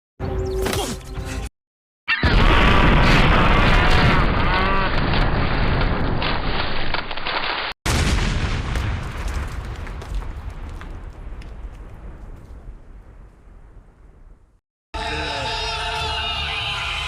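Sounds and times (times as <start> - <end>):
loud dense booming noise: 2.2 - 6.2, 7.9 - 10.0.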